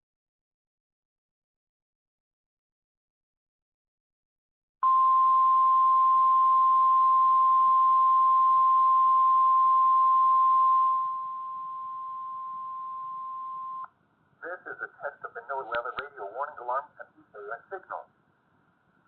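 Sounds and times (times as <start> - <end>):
steady alarm tone: 4.8 - 13.9
broadcast hiss: 14.4 - 18.5.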